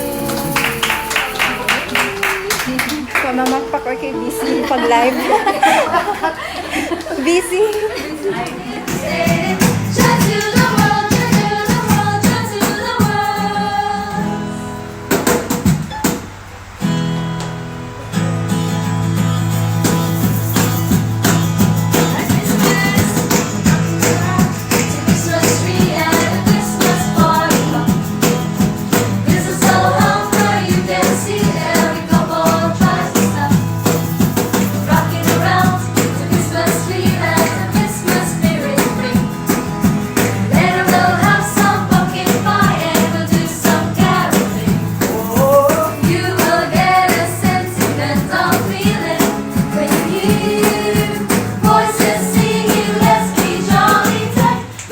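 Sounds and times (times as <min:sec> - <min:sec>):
person singing: 0:00.0 - 0:01.4, 0:40.5 - 0:54.7
band playing a song: 0:19.9 - 0:54.7.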